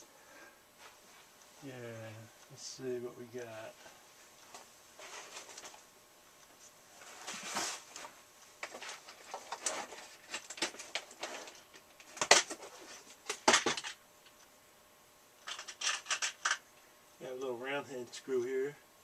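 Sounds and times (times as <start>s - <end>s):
small metal parts rattling: 15.4s - 16.6s.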